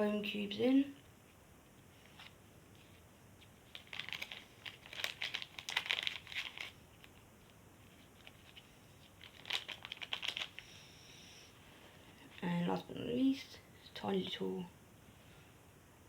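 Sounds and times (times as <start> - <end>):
plastic packet crinkling: 3.5 - 7.2, 8.1 - 10.7.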